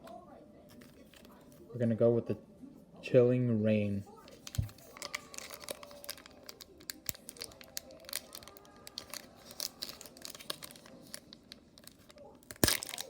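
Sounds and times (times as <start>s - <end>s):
foil wrapper crinkling and tearing: 4.2s - 13.0s.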